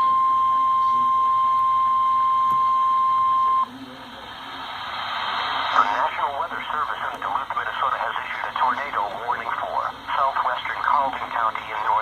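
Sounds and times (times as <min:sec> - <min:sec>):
loud steady warning beep: 0:00.0 - 0:03.8.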